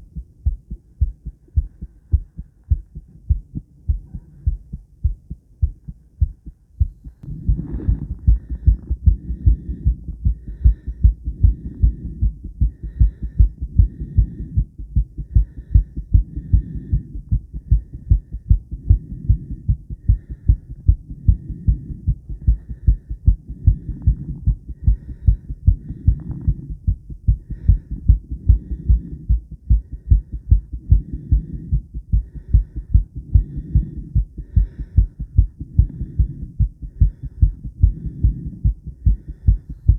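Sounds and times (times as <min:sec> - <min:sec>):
heartbeat thudding: 0:00.0 - 0:39.9.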